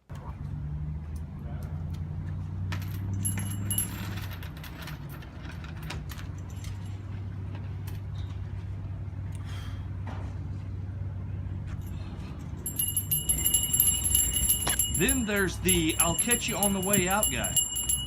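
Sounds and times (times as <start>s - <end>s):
handbell jingling: 3.0s - 4.4s, 12.6s - 18.0s.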